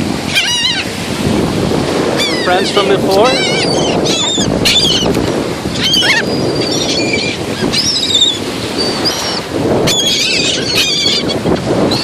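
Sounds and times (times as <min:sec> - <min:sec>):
surf rushing: 0:00.0 - 0:12.0
wind on microphone: 0:00.0 - 0:12.0
seagulls squawking: 0:00.2 - 0:01.0, 0:02.0 - 0:12.0.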